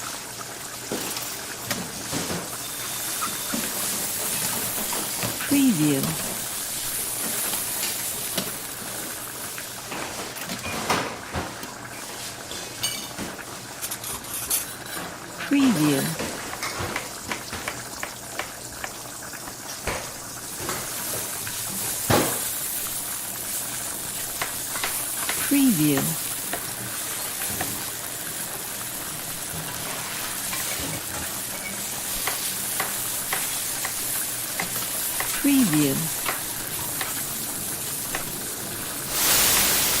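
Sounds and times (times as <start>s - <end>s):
food sizzling in a pan: 0.0s - 40.0s
utensils clinking on cookware: 1.0s - 5.4s, 12.5s - 15.3s.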